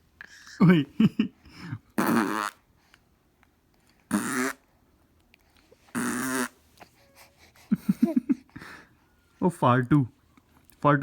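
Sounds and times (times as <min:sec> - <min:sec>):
raspy fart noises: 0:02.0 - 0:02.6, 0:04.1 - 0:04.6, 0:05.9 - 0:06.6.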